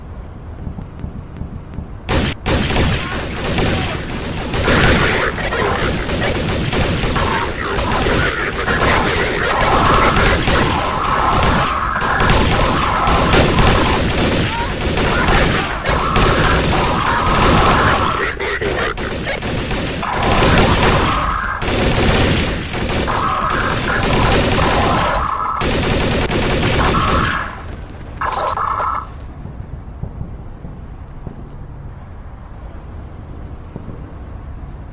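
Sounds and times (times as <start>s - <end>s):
cartoon gunfire and blasts: 2.1s - 29.2s
person shouting: 7.0s - 21.8s.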